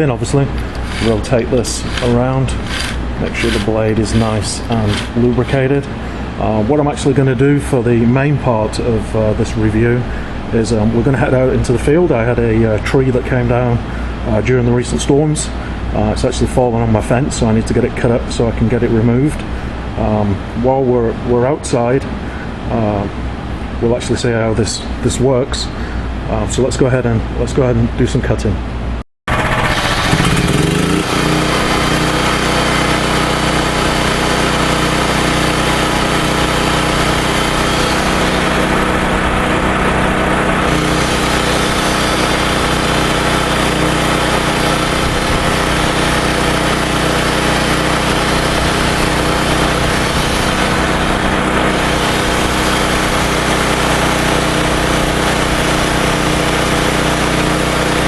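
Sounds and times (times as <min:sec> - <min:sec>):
electric chainsaw cutting wood: 0:00.5 - 0:05.6, 0:29.3 - 0:58.0.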